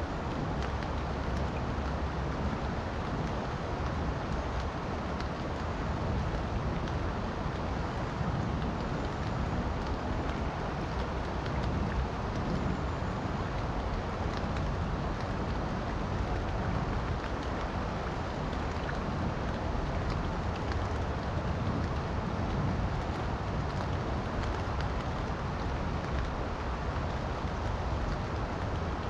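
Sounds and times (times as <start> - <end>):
falling rain: 0.0 - 29.0
raindrop ticks: 0.1 - 29.0.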